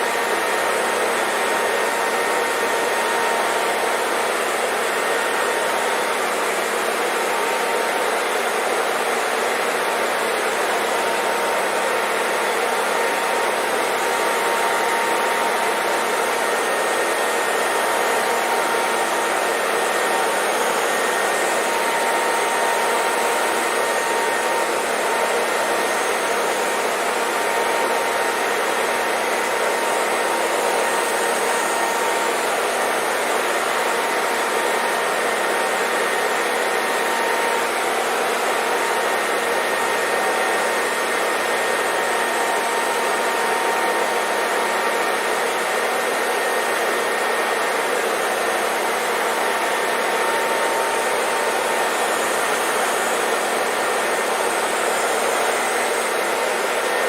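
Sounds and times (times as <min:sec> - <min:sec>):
hair dryer air hiss: 0:00.0 - 0:57.0
hair dryer motor whine: 0:00.0 - 0:57.0.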